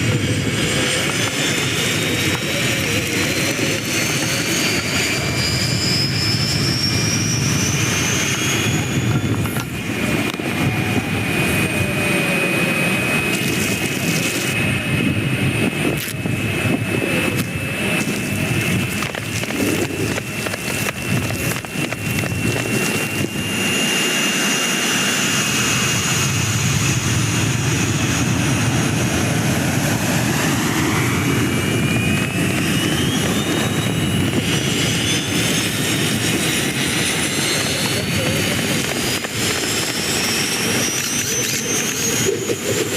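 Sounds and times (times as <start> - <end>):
high engine whine: 0.0 - 42.9
jet engines roaring: 0.0 - 42.9
whine rising in pitch: 0.0 - 42.9.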